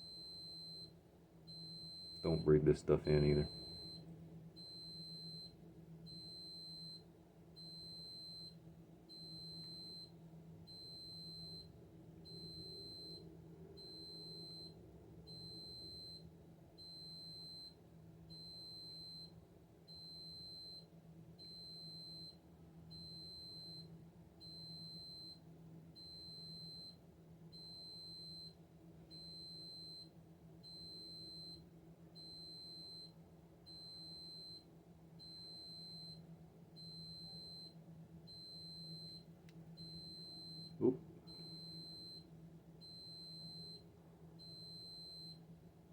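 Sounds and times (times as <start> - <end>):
faint low hum: 1.5 - 5.5.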